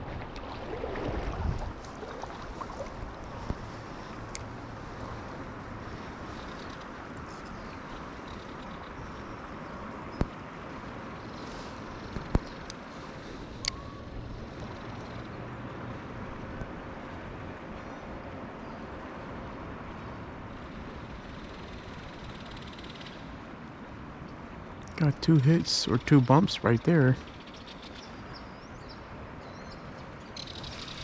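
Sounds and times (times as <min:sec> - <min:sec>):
river water rushing: 0:00.0 - 0:08.6, 0:23.2 - 0:27.3.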